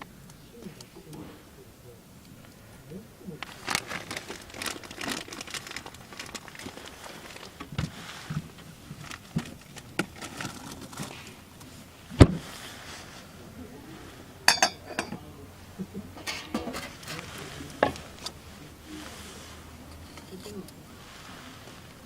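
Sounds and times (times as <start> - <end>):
metal cookware clinking: 14.5 - 15.2, 16.2 - 18.0.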